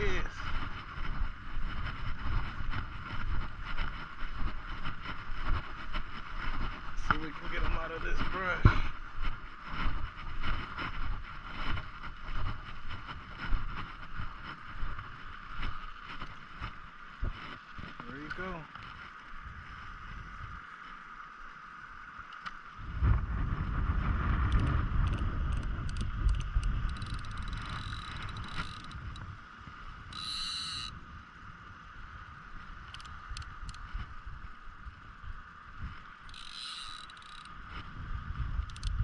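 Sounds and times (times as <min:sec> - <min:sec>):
low rumble of rod and boat: 0:00.0 - 0:39.0
fishing reel clicking and winding: 0:24.5 - 0:29.3, 0:30.1 - 0:31.0, 0:32.8 - 0:33.9, 0:36.2 - 0:37.6, 0:38.6 - 0:39.0.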